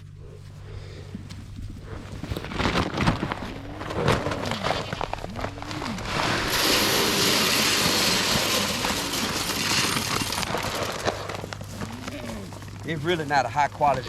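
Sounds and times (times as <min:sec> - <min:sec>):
dry feed being poured: 0:06.1 - 0:11.3.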